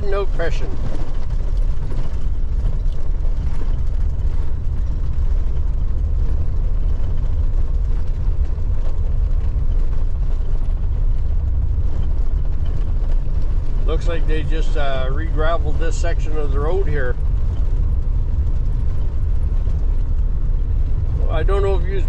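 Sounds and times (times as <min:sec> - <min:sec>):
engine and tyres rumbling on gravel: 0:00.0 - 0:22.0.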